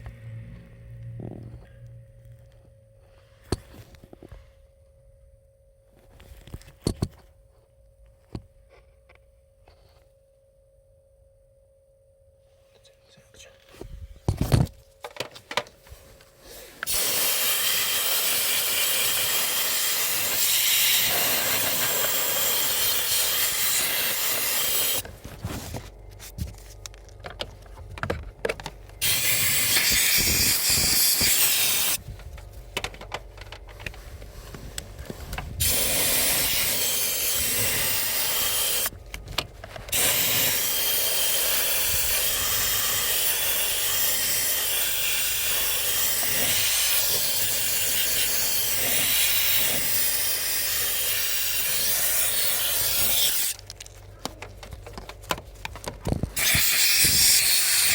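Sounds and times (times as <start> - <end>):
pressurized spray hissing: 16.9 - 25.0, 29.0 - 32.0, 35.6 - 38.9, 39.9 - 53.6, 56.4 - 57.9.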